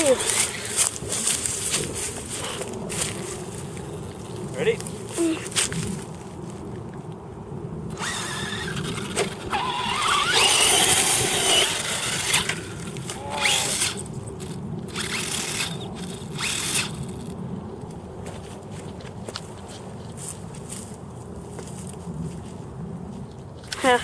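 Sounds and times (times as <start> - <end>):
toy car electric motor whining: 0.0 - 1.6, 7.9 - 17.4.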